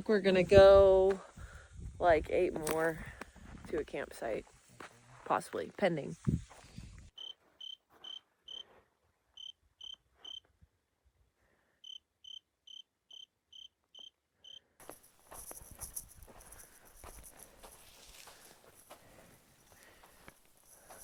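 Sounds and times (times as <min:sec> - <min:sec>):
cricket chirping: 0:07.2 - 0:08.6, 0:09.4 - 0:10.4, 0:11.8 - 0:21.0.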